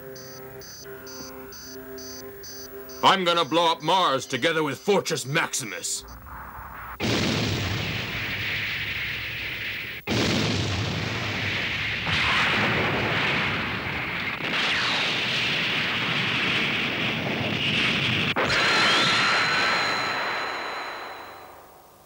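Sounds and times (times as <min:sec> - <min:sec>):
steady high tones: 0:00.0 - 0:07.0, 0:18.4 - 0:22.0
explosion rumbling roar: 0:06.2 - 0:20.0.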